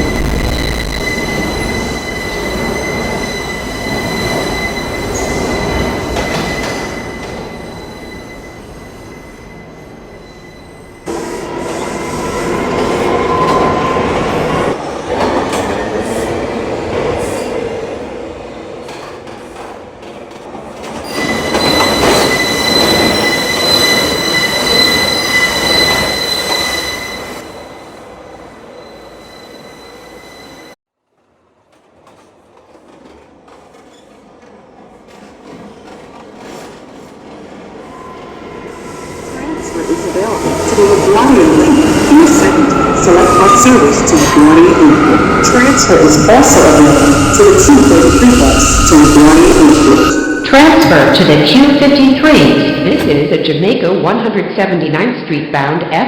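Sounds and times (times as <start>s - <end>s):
subway train rumble and rattle: 0.0s - 56.0s
high-pitched wheel squeal: 21.1s - 27.8s.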